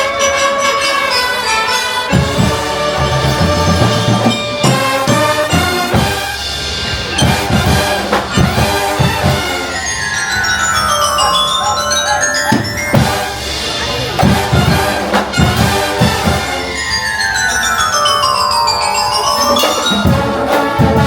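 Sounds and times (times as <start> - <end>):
brass horns melody: 0.0 - 21.0
glockenspiel notes: 0.0 - 21.0
marching drums: 2.1 - 17.0, 19.2 - 21.0.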